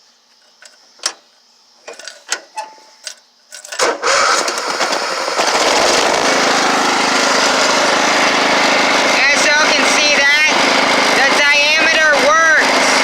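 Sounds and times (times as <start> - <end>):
lawn mower engine running: 3.8 - 13.0.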